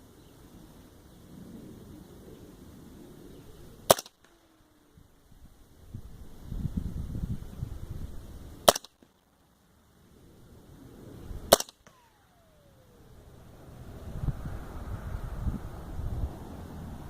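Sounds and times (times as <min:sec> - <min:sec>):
suppressed rifle shots: 0:03.7 - 0:05.0, 0:08.6 - 0:09.3, 0:11.3 - 0:13.2
ring falling in pitch: 0:11.5 - 0:13.4.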